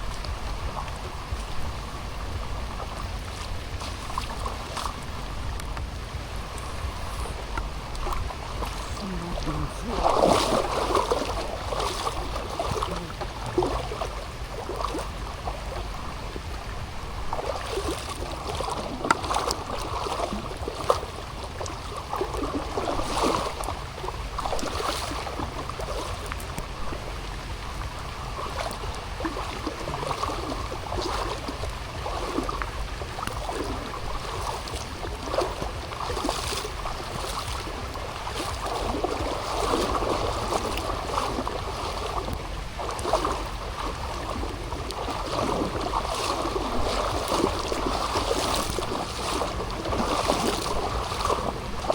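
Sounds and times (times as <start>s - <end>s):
low rumble: 0.0s - 17.4s
running water: 0.0s - 51.9s
water drips and splashes: 0.0s - 51.9s
steady rain: 5.0s - 14.4s.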